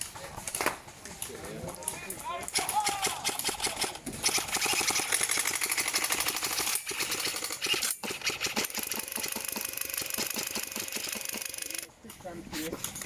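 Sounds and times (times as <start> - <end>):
airsoft rifle firing full auto: 2.5 - 11.9.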